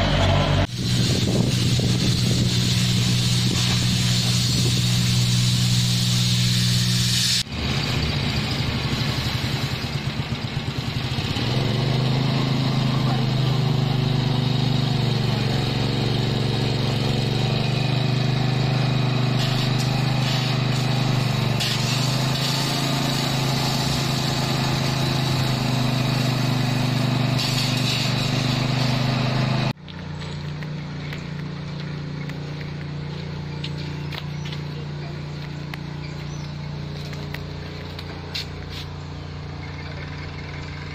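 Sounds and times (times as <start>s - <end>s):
quiet steady engine hum: 0.0s - 17.7s, 29.7s - 40.9s
heavy machinery engine running: 0.0s - 40.9s.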